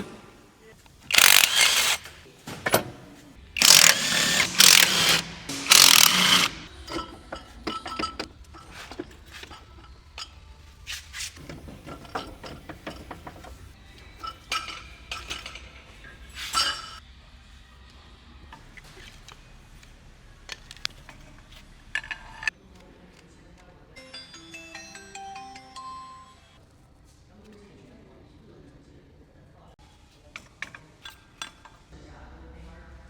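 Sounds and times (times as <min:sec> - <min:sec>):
air tool bursts: 0:01.1 - 0:02.1, 0:03.6 - 0:06.7.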